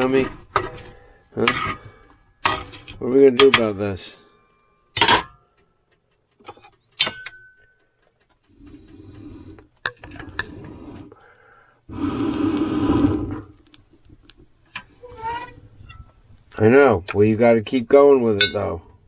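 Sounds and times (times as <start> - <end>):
sharp clink: 7.0 - 7.6
pet making rough throaty bursts: 8.5 - 13.7.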